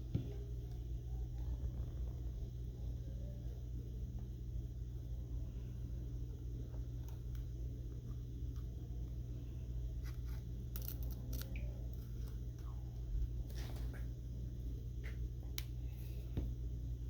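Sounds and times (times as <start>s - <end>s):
low hum: 0.0s - 17.0s.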